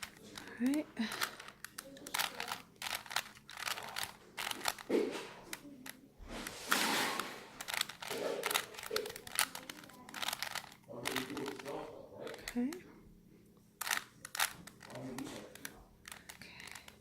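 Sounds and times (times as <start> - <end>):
puzzle cube clicks and snaps: 0.0 - 4.9, 6.7 - 12.8, 13.8 - 17.0
plastic scraping rustle: 0.0 - 11.8.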